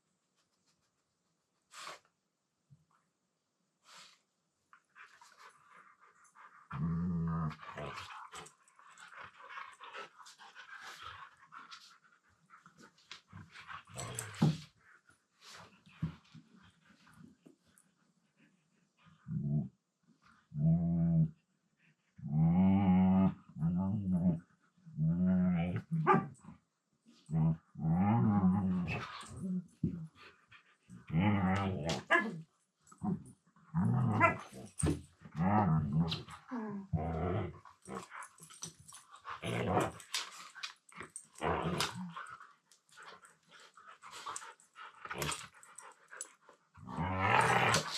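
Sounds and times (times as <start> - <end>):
dog play-growling: 5.0 - 14.8, 27.3 - 47.9
dog growling grumble: 33.0 - 38.1, 41.4 - 42.3, 46.8 - 47.9.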